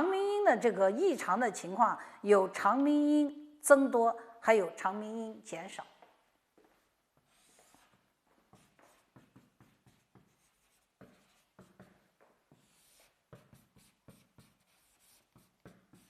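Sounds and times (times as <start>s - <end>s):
pen writing scratches and taps: 6.6s - 16.0s.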